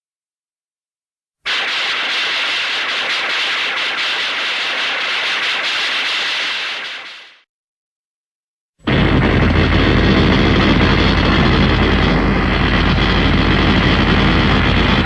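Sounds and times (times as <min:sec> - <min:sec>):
mechanical robot drone: 0:08.8 - 0:15.0.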